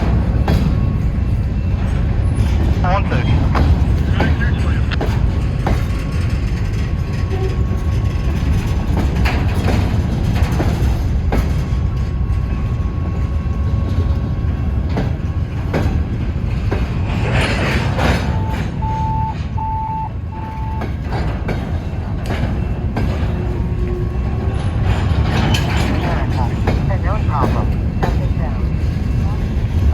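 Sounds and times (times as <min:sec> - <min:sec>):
freight train rolling past: 0:00.0 - 0:29.9
short electronic beeps: 0:18.2 - 0:20.9.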